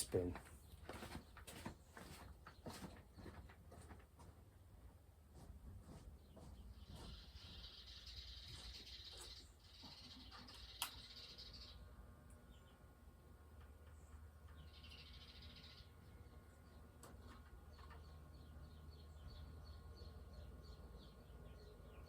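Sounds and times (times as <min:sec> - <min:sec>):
ceiling fan humming: 0:04.2 - 0:22.0
birds chirping: 0:05.8 - 0:22.0.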